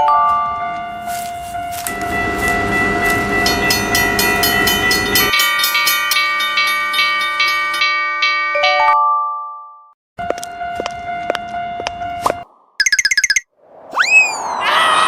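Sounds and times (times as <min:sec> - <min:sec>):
crossing warning bell dinging: 0:00.0 - 0:09.0, 0:10.2 - 0:13.1
passing train rumble: 0:00.6 - 0:07.8, 0:10.2 - 0:12.8.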